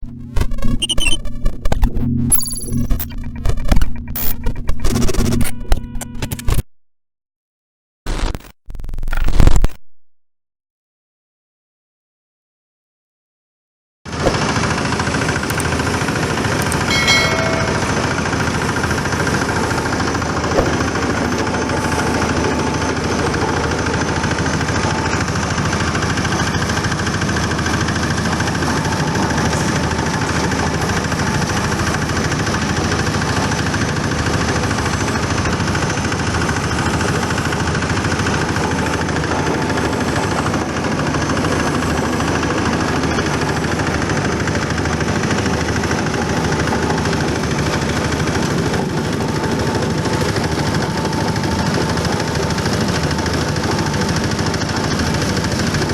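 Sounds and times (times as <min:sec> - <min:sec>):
foam shredding machine running: 0:14.1 - 0:55.9.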